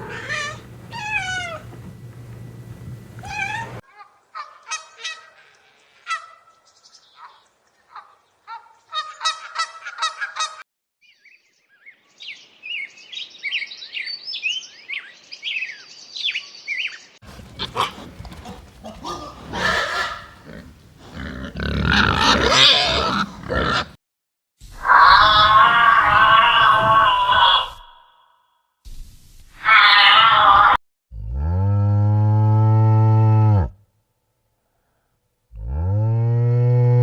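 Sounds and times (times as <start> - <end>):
short honking animal calls: 0.0 - 1.9
rough noisy animal calls: 0.0 - 3.8, 17.2 - 24.0, 24.8 - 28.1, 29.6 - 30.8.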